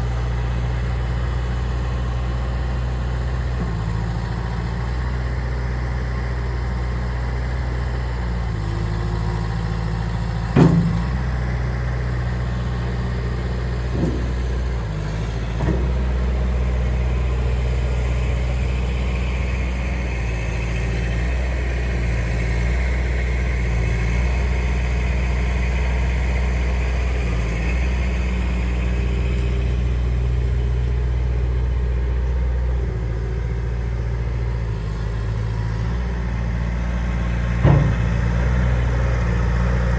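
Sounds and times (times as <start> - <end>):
loader engine running: 0.0 - 39.9
sharp knocks: 10.6 - 11.8, 13.8 - 16.4, 37.6 - 38.9.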